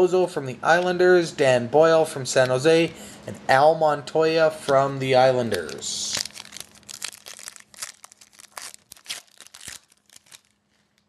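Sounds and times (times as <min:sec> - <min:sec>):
plastic wrapper tearing and crinkling: 0:05.5 - 0:11.0.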